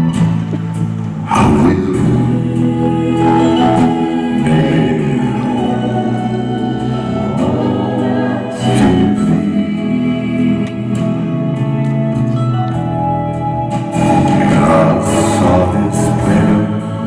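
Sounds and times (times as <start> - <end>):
live band playing slow chords: 0.0 - 17.0.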